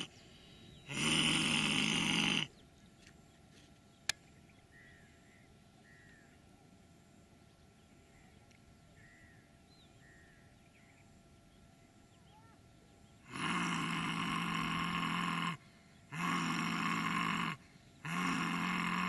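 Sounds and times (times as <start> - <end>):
person roaring haaa: 0.9 - 2.5, 13.3 - 19.0
person breathing: 15.6 - 16.1.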